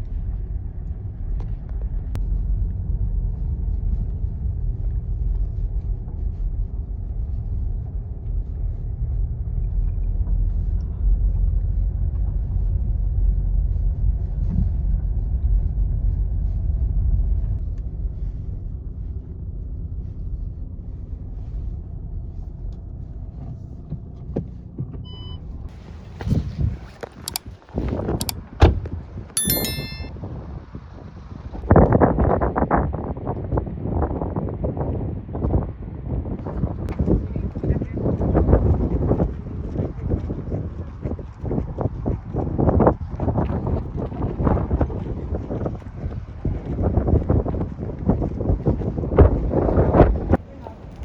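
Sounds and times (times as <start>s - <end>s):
short electronic beep: 29.4s - 30.1s.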